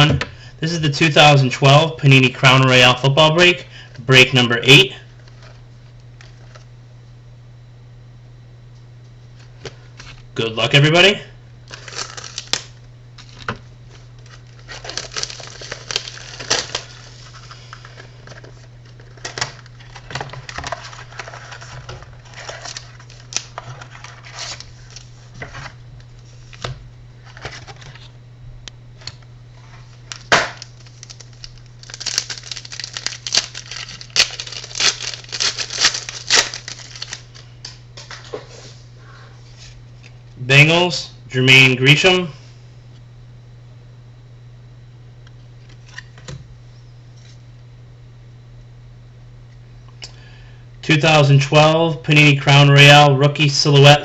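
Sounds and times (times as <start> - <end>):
low electrical hum: 0.0 - 54.0
card packaging tearing and crinkling: 11.6 - 28.1, 29.6 - 37.8.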